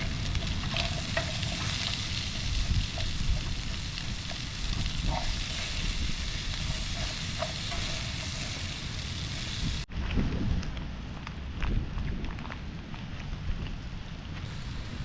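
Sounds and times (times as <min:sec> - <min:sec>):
campfire crackling and popping: 0:00.0 - 0:09.9
wind-like rush: 0:00.0 - 0:15.0.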